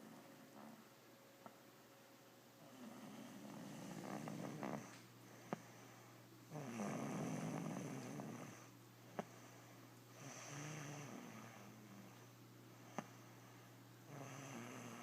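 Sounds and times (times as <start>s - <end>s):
girl snoring: 2.6s - 5.0s, 6.5s - 9.3s, 10.2s - 12.0s, 14.1s - 15.0s.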